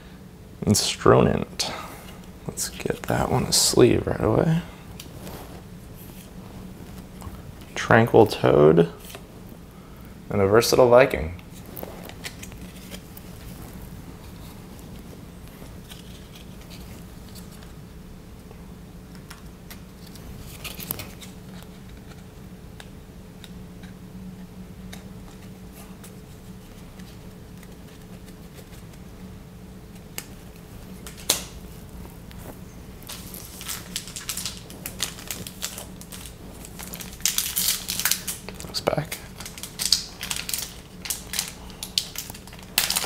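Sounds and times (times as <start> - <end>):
steady low hum: 0.0 - 43.0
card wrappers rustling: 2.0 - 9.3, 11.4 - 17.8, 19.7 - 22.3, 24.9 - 29.1, 29.9 - 43.0.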